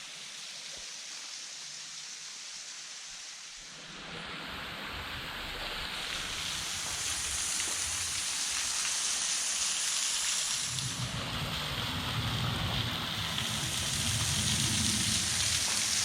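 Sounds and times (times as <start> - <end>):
waterfall rushing: 4.4 - 16.0
low rumble: 10.7 - 16.0.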